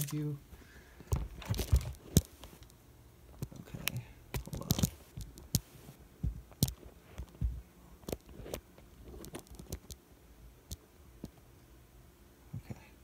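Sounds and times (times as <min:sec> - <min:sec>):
small hard parts clicking and tapping: 0:01.0 - 0:10.0.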